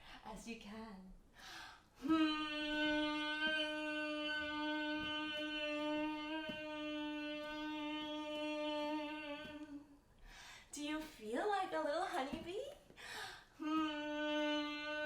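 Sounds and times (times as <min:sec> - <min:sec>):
woman humming a long note: 0:02.0 - 0:10.0, 0:13.6 - 0:15.0.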